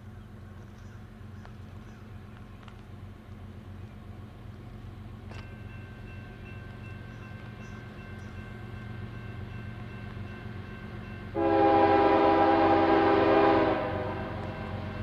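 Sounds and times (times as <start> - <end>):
low rumble of train: 0.0 - 15.0
locomotive air horn blast: 11.4 - 14.8.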